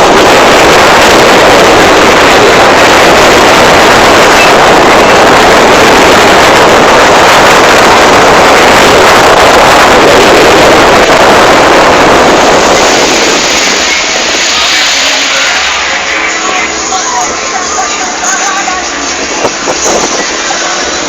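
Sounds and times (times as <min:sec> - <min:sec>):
wind buffeting microphone: 0:00.0 - 0:14.5, 0:19.2 - 0:21.0
boat engine: 0:00.0 - 0:21.0
wind and water rushing: 0:00.0 - 0:21.0.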